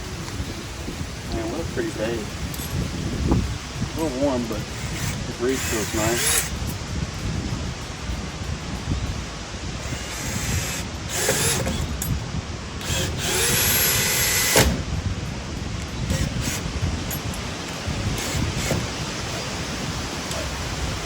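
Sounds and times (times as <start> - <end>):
wind rumbling on microphone: 0.0 - 21.0
power drill running: 3.9 - 6.7, 9.8 - 12.0, 12.8 - 14.9, 16.0 - 16.8, 18.0 - 19.7.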